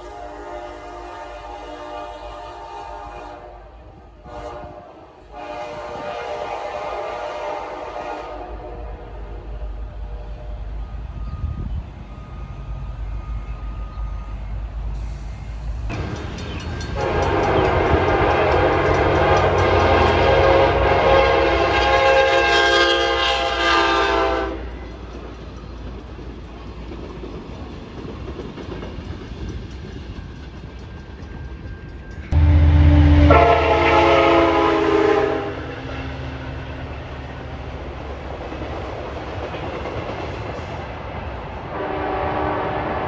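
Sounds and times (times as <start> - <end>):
locomotive air horn blast: 0.0 - 10.7, 16.9 - 24.8, 32.4 - 36.1, 41.7 - 43.0
train rumbling: 0.0 - 43.0.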